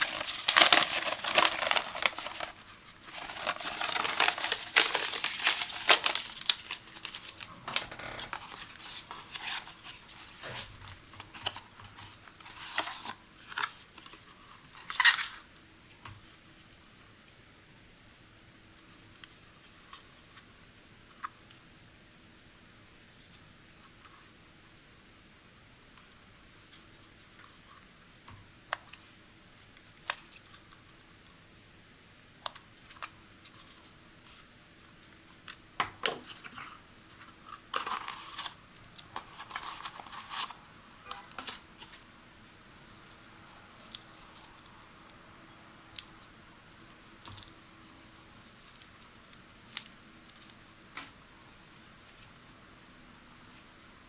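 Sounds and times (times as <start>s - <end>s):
packaging rustling: 0.0s - 14.1s, 37.5s - 42.1s.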